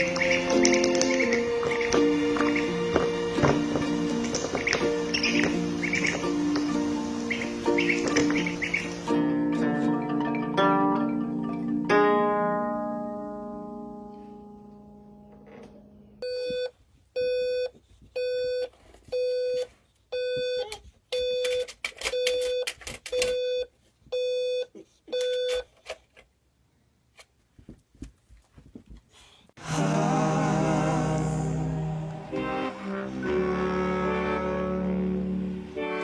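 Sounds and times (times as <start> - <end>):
music: 0.0 - 16.1, 29.6 - 36.0.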